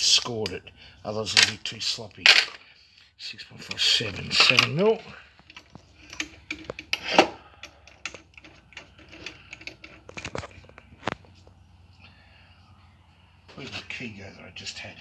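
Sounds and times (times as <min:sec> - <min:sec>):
small metal tools clinking: 0:03.7 - 0:10.5.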